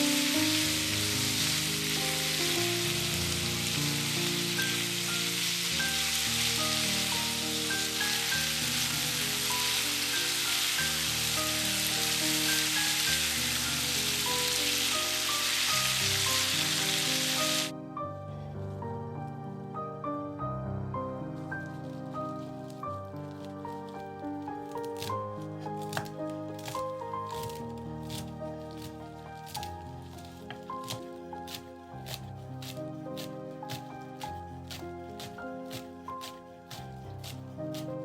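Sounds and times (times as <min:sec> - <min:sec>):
food sizzling in a frying pan: 0:00.0 - 0:17.7
soft background music: 0:00.0 - 0:38.0.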